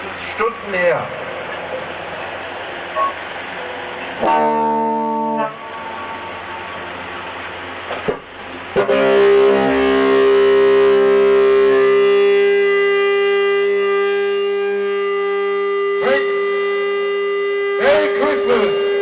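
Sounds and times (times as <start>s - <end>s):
loud held tone: 2.9s - 7.2s, 8.9s - 19.0s.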